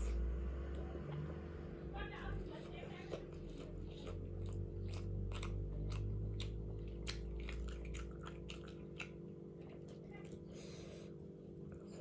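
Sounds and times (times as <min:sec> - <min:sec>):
person chewing crunchy food: 0:02.6 - 0:12.0.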